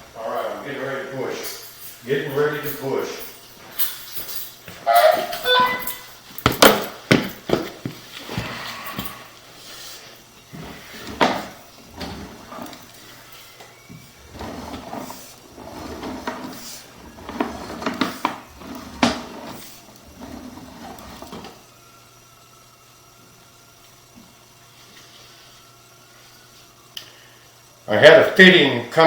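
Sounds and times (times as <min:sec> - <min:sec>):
faint steady hum: 0:00.0 - 0:29.0.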